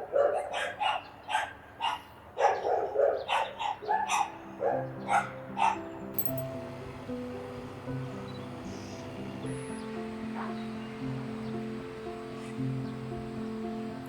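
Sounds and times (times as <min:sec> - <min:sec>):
dog barking: 0:00.0 - 0:05.9, 0:10.4 - 0:10.6
soft background music: 0:03.5 - 0:14.0.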